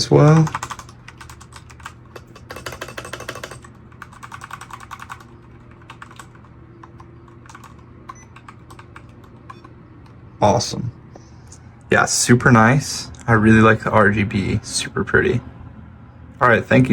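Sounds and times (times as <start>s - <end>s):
mechanical keyboard typing: 0.0s - 9.7s.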